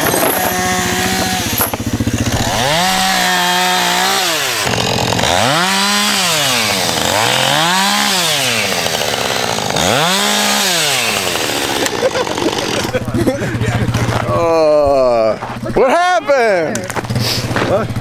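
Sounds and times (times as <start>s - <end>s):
chainsaw engine revving: 0.0s - 15.2s, 16.7s - 18.0s.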